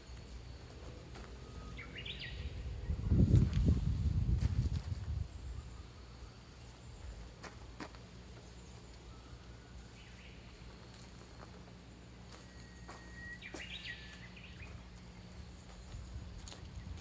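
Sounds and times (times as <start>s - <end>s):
faint outdoor ambience: 0.0s - 17.0s
bird whistle and warble: 1.4s - 3.9s, 12.3s - 16.1s.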